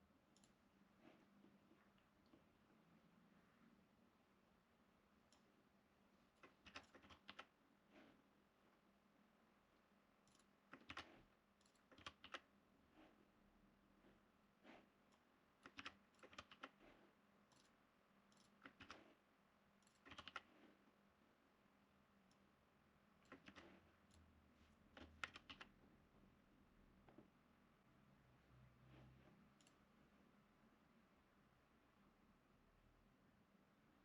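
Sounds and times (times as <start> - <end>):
computer keyboard typing: 6.4 - 7.6, 10.3 - 12.5, 15.6 - 16.9, 17.5 - 19.2, 19.8 - 20.6, 23.2 - 23.8, 25.0 - 25.7.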